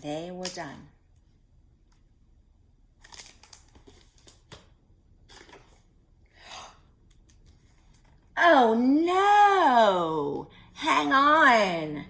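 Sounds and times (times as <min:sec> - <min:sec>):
paper page rustling: 0:03.0 - 0:05.9.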